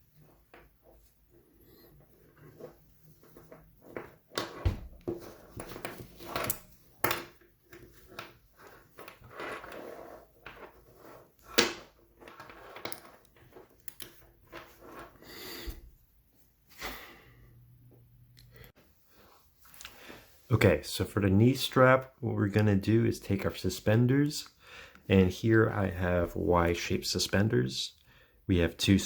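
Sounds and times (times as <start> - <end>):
objects handled with clicks and knocks: 0.0 - 15.2.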